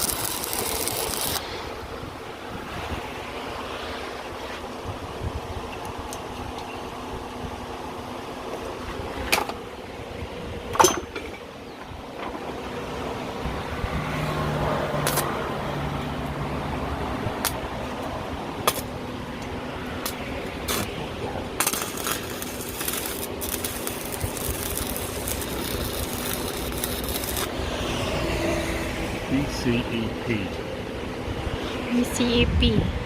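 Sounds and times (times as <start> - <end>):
mechanical hum with low rumble: 0.0 - 14.0, 15.0 - 33.0.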